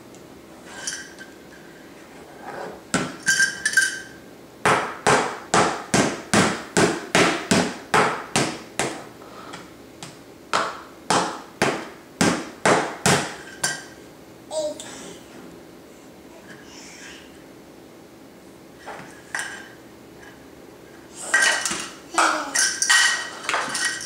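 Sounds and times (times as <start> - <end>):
child banging object on hard surface: 21.4 - 23.9.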